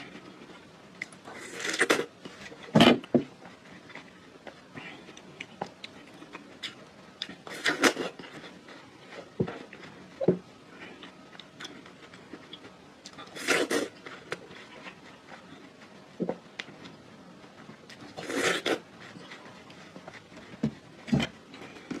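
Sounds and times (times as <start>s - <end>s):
person biting watermelon: 13.3s - 15.0s, 18.1s - 19.4s.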